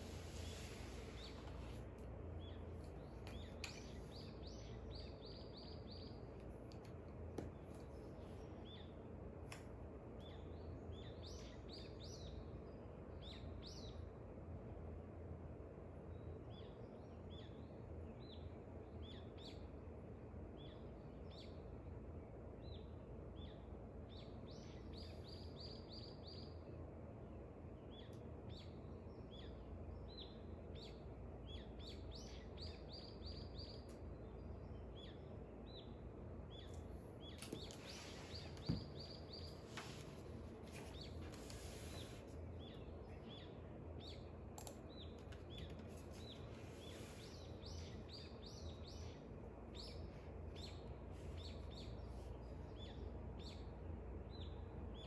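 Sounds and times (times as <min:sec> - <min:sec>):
low background noise: 0:00.0 - 0:55.0
birds chirping: 0:27.8 - 0:55.0.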